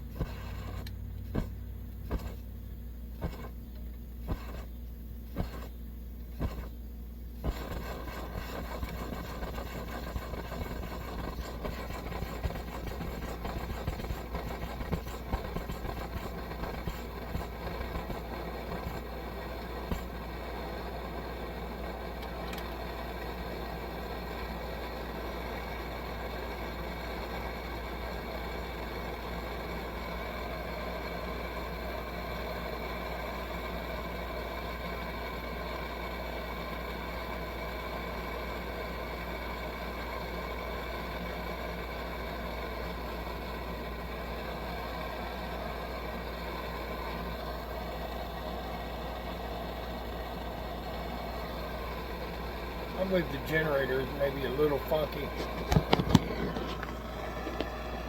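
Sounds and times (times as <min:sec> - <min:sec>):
burner pops and crackles: 0:00.0 - 0:02.5, 0:03.2 - 0:03.6, 0:04.2 - 0:04.7, 0:05.3 - 0:06.8, 0:07.4 - 0:20.3, 0:54.2 - 0:57.8
stove burner hissing: 0:00.0 - 0:58.0.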